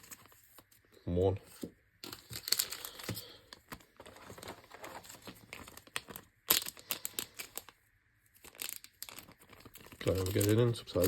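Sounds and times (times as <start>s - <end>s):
plastic card sleeve crinkling: 0.0s - 0.8s, 1.5s - 11.0s.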